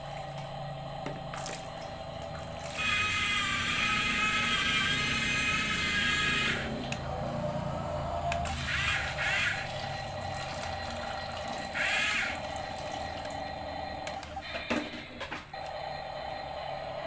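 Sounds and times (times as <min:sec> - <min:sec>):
small electric motor whirring: 0:02.4 - 0:07.1, 0:08.3 - 0:10.8, 0:11.5 - 0:12.6.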